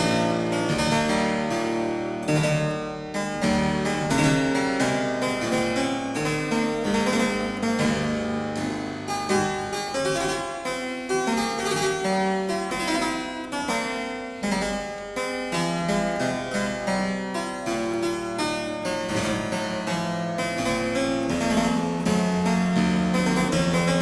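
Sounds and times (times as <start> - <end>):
harpsichord music: 0.0 - 24.0.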